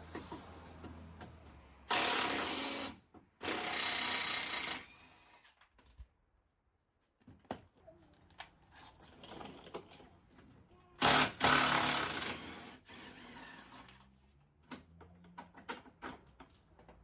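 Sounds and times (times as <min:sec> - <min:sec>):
tools clinking on metal: 0:16.8 - 0:17.0.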